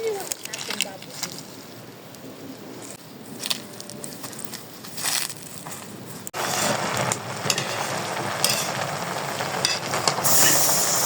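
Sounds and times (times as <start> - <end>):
stirring clicks and scrapes: 6.4 - 10.9
food sizzling in a pan: 6.4 - 11.0.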